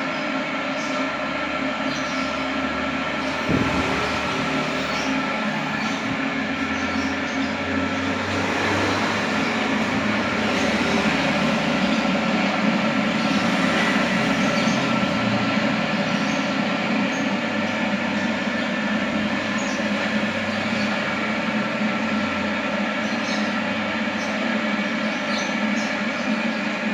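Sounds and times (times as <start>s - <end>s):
spinner machine whirring: 2.3s - 15.3s.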